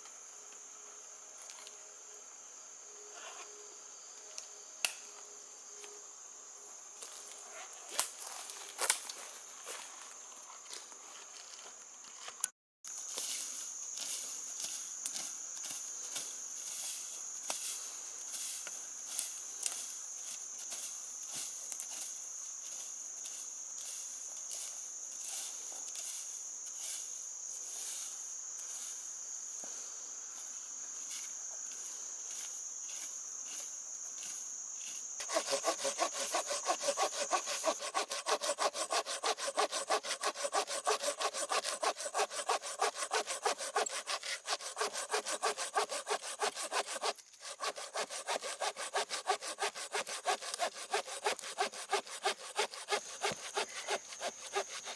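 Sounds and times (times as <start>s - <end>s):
high insect drone: 0.0s - 10.8s, 12.9s - 54.9s
hand saw cutting wood: 35.2s - 54.9s.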